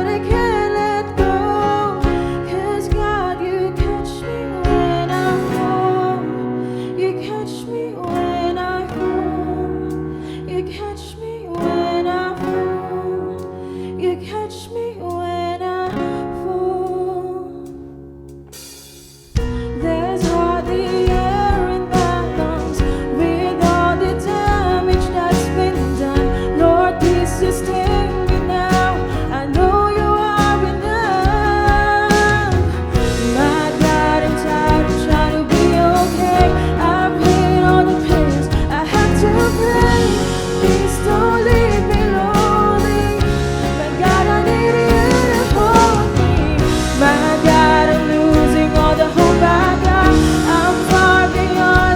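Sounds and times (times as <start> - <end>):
worship band playing: 0.0 - 7.5, 18.5 - 51.9
person singing: 0.0 - 17.6, 19.5 - 51.9.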